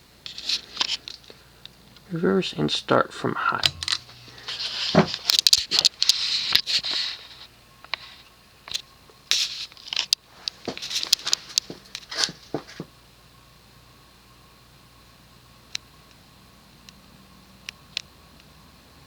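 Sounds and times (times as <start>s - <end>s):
faint steady hum: 0.0s - 19.0s
switch clicks and scraping: 3.6s - 5.9s.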